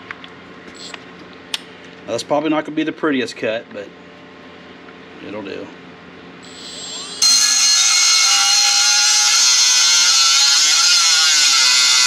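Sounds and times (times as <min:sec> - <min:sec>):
cut-off wheel grinding metal: 0:06.6 - 0:12.0.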